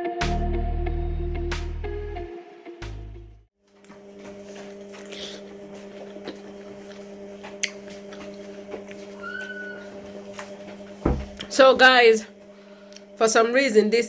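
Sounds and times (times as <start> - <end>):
electrical hum: 3.8 - 14.0
high squeak: 9.2 - 10.0.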